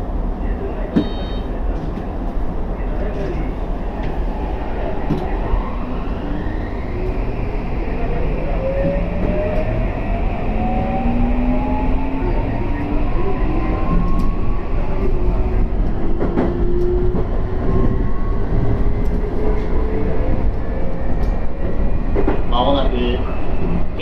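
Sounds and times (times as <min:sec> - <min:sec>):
wheels rumbling on rail: 0:00.0 - 0:24.0
electric train motor whine: 0:04.6 - 0:14.8.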